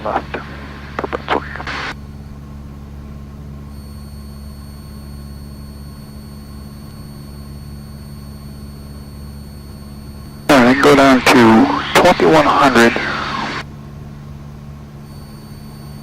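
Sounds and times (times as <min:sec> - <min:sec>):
airplane engine droning: 0:00.0 - 0:16.0
thin high-pitched whine: 0:03.7 - 0:13.6, 0:15.0 - 0:16.0.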